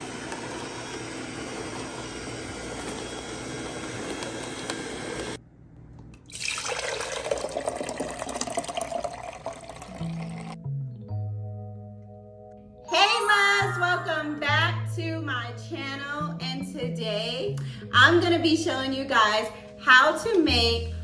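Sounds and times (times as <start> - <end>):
liquid pouring: 6.2 - 10.6
musical notes: 9.7 - 19.4.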